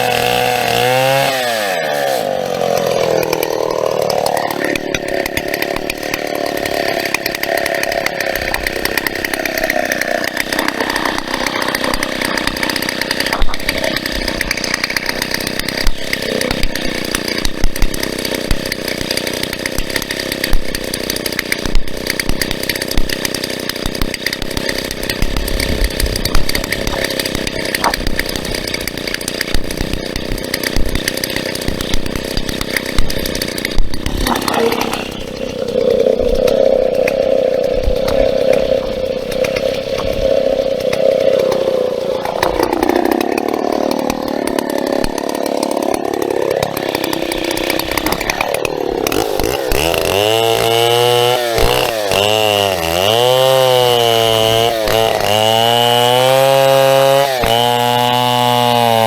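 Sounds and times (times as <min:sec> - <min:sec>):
chainsaw sawing through wood: 0:00.0 - 0:59.0.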